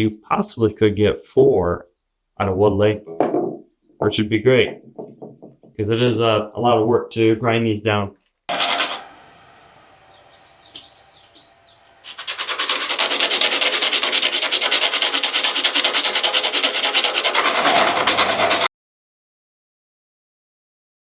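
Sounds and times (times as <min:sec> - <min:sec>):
bone being ground rasping: 0:08.5 - 0:09.3, 0:12.0 - 0:18.7.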